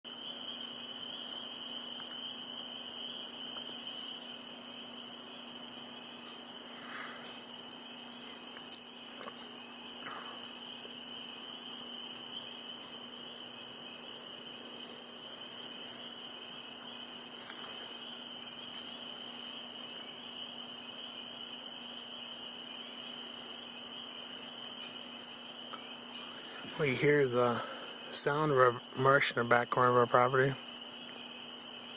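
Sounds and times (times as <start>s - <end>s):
frog chorus: 0.1s - 31.9s.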